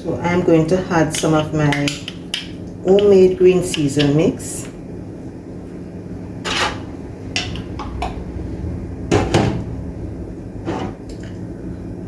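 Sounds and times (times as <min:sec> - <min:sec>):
utensils clattering against bowl: 0:01.0 - 0:04.7
low hum: 0:04.8 - 0:12.0.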